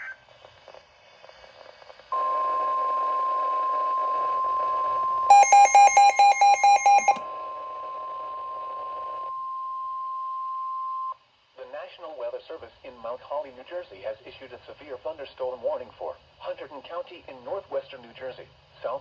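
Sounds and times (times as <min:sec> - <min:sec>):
steady warning alarm tone: 0:02.2 - 0:07.2
electronic alarm beeping rapidly: 0:05.3 - 0:07.2.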